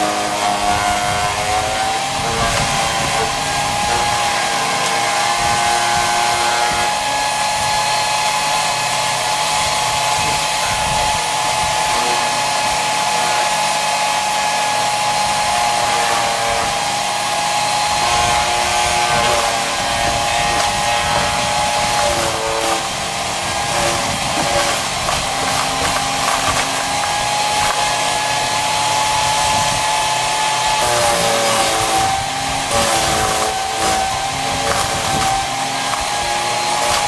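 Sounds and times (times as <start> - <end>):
chipper shredder whine: 0.0 - 37.0
limbs being chipped: 17.8 - 29.9, 30.6 - 37.0.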